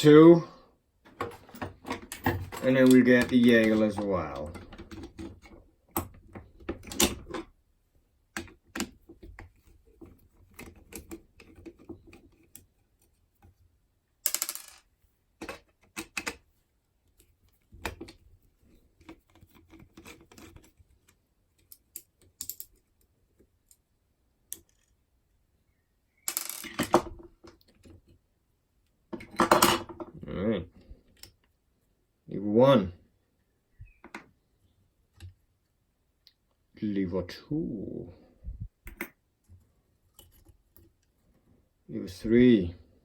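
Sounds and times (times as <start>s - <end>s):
lock parts clicking and clinking: 1.1s - 7.6s, 8.3s - 12.7s, 15.4s - 16.5s, 17.1s - 23.8s, 24.5s - 25.0s, 26.2s - 28.1s, 29.1s - 30.2s, 38.8s - 41.1s.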